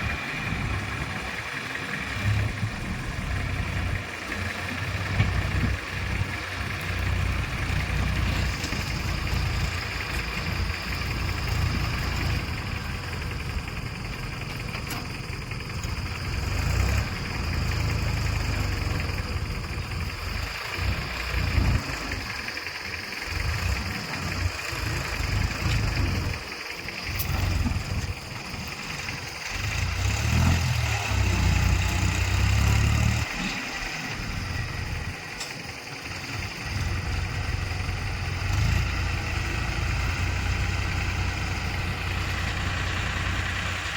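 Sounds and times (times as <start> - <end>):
diesel engine rumbling: 0.0 - 43.9.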